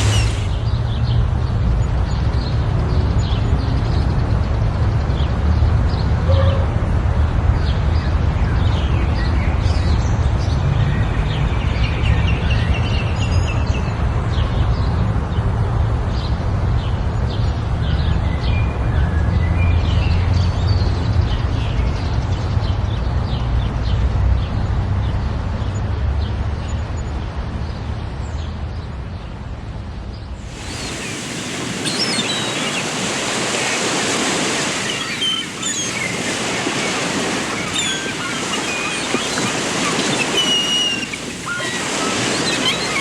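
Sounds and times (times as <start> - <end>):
small birds chirping: 0.0 - 0.8, 30.5 - 43.0.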